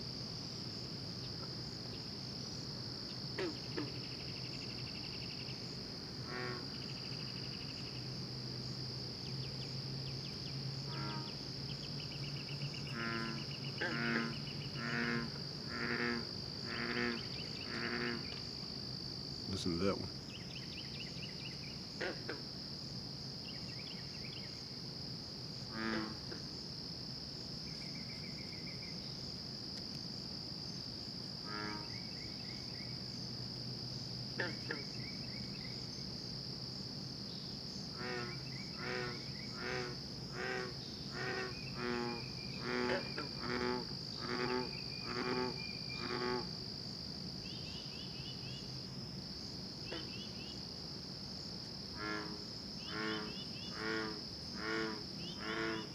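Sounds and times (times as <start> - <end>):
crickets chirring: 0.0 - 55.9
frogs calling: 3.4 - 5.4, 10.8 - 11.4, 12.2 - 18.5, 25.7 - 26.5, 34.4 - 35.8, 37.9 - 46.6, 49.8 - 50.6, 51.9 - 55.9.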